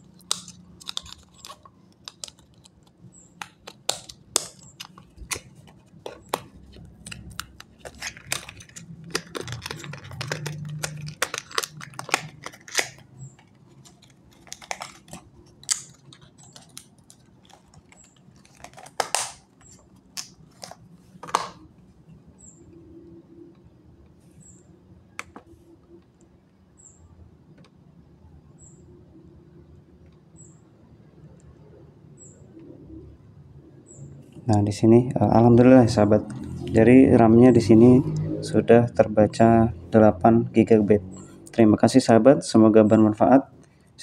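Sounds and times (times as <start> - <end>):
laptop keys clicking: 0.1 - 21.5.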